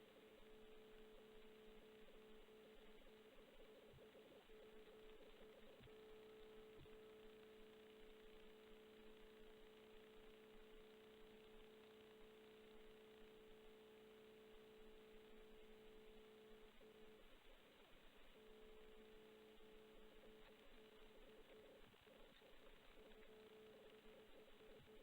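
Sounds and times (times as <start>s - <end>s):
faint electrical hum: 0.0s - 25.0s.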